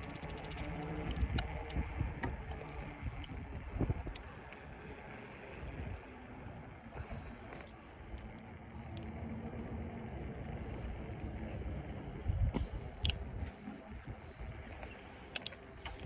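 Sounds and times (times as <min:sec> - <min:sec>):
sharp clicks and rattles: 0:00.0 - 0:05.0, 0:12.0 - 0:16.0
wind on microphone: 0:00.0 - 0:07.5, 0:10.9 - 0:14.7
bicycle tyre rumble: 0:00.0 - 0:16.0.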